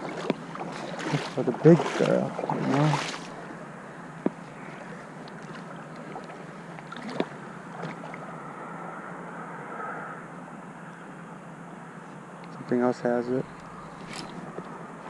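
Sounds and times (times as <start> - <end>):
river water rushing: 0.0 - 8.3, 13.4 - 15.0.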